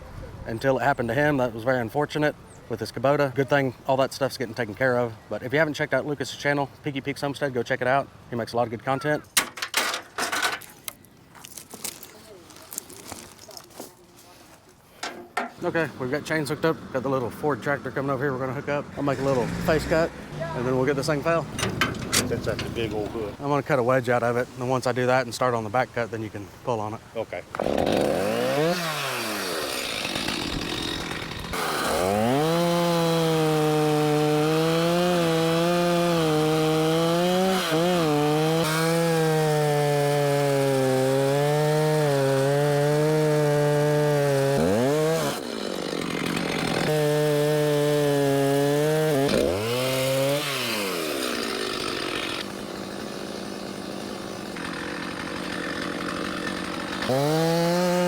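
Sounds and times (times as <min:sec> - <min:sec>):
chainsaw cutting wood: 0:19.0 - 0:23.4, 0:27.5 - 0:58.0.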